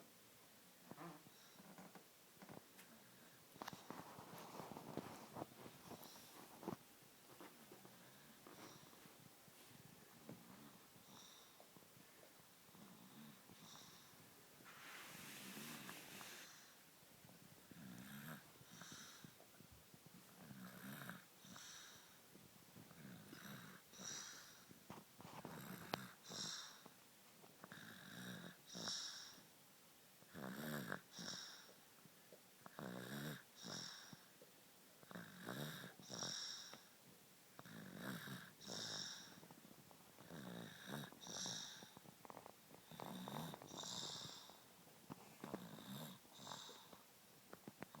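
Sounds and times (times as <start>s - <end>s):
baby snoring: 37.6s - 39.4s, 40.2s - 42.0s, 42.8s - 44.6s, 45.4s - 47.0s.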